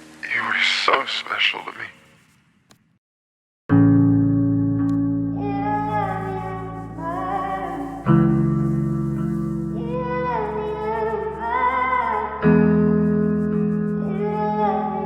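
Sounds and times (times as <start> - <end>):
held chords: 3.7 - 14.9
wordless voice-like melody: 5.4 - 12.6, 14.0 - 15.0.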